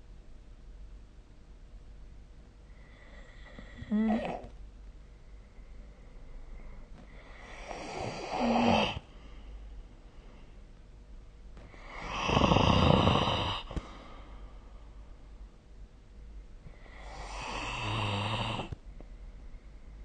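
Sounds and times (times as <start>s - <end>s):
person snoring: 2.8s - 4.5s, 7.2s - 9.1s, 11.7s - 14.0s, 16.7s - 18.8s.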